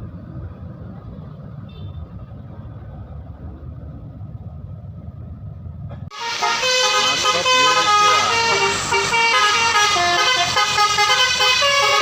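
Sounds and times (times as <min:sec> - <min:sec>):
vehicle engine rumble: 0:00.0 - 0:12.0
musical bus horn melody: 0:06.1 - 0:12.0.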